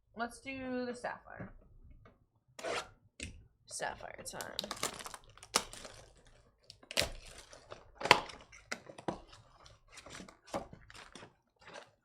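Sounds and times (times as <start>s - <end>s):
card packs tapping and clicking: 4.3s - 11.8s.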